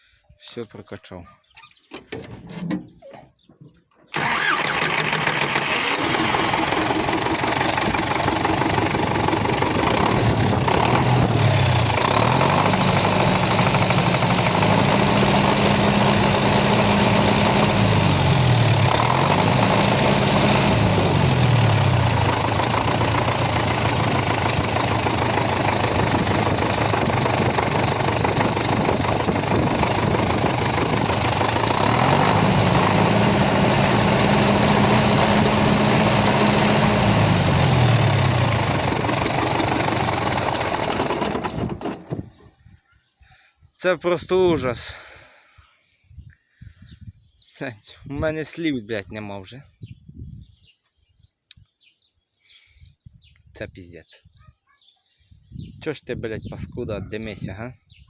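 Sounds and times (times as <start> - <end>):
tractor diesel engine revving: 4.1 - 42.2.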